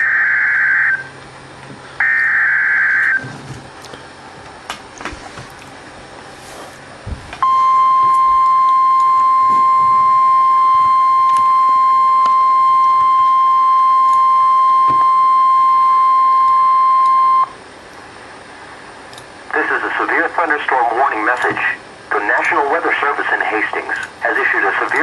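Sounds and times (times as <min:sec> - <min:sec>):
steady alarm tone: 0:00.0 - 0:01.2, 0:02.0 - 0:03.3, 0:07.4 - 0:17.6
radio hiss: 0:19.5 - 0:25.0.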